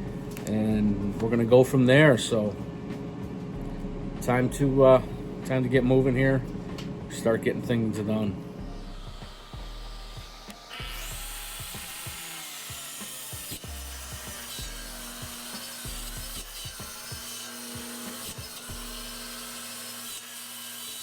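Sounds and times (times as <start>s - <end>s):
power saw cutting wood: 8.6s - 21.0s.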